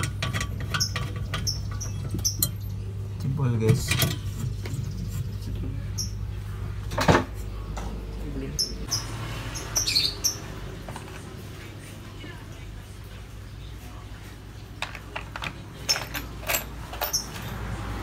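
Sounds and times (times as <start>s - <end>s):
steady low hum: 0.0s - 14.4s.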